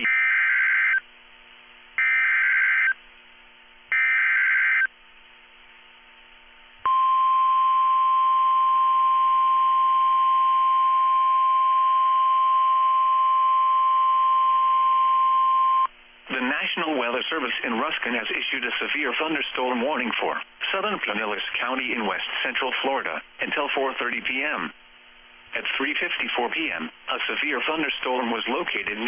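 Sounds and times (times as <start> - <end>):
steady warning alarm tone: 0.0 - 1.0, 2.0 - 3.0, 3.9 - 4.9.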